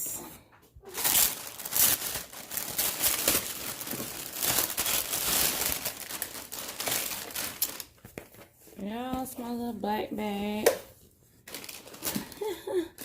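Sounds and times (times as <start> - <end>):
wrapping torn and crinkled: 0.8 - 8.6, 11.4 - 12.8.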